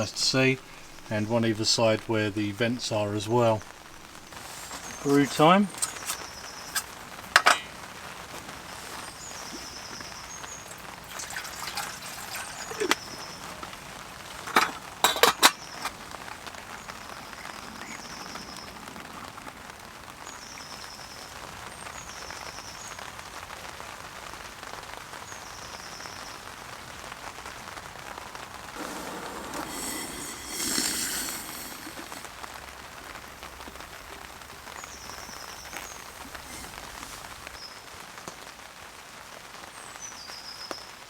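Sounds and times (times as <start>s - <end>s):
rain falling on a tent: 0.0s - 41.0s
metal clinks and knocks: 5.1s - 7.8s, 14.4s - 15.9s.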